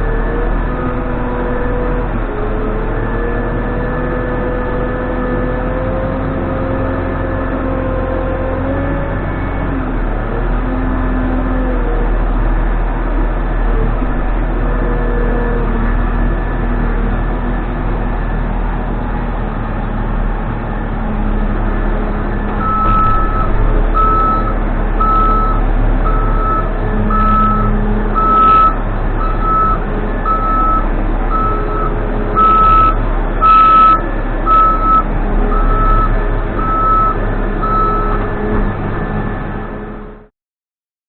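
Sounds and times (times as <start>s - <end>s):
diesel engine running: 0.0s - 40.3s
reversing alarm beeping: 22.5s - 38.3s.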